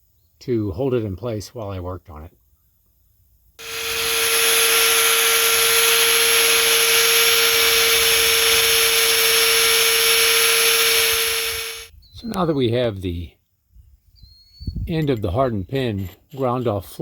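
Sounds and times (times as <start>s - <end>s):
power grinder grinding metal: 3.6s - 11.9s.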